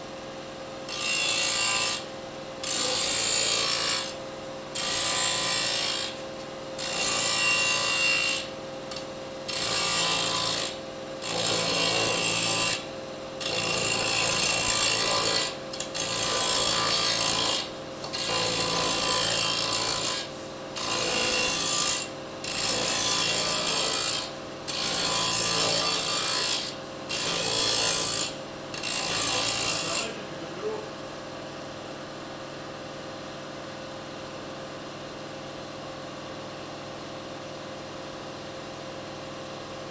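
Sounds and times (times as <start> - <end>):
disc saw cutting metal: 0.9 - 4.2, 4.8 - 6.2, 6.8 - 30.5.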